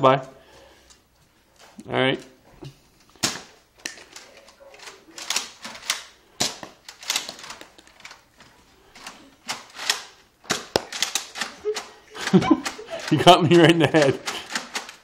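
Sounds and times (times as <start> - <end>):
toy blaster plastic clacks: 9.5 - 11.9.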